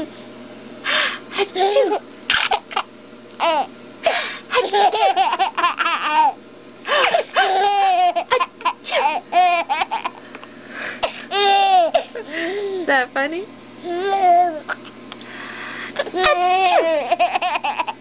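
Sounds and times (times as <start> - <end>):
baby giggling: 1.4 - 10.2, 16.0 - 18.0.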